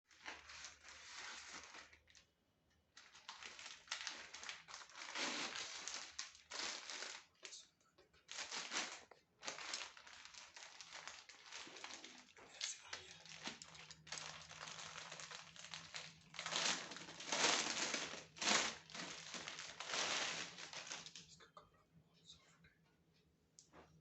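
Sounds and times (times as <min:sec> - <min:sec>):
plastic packaging crinkling: 0:00.1 - 0:02.3, 0:02.9 - 0:07.5, 0:08.3 - 0:21.3.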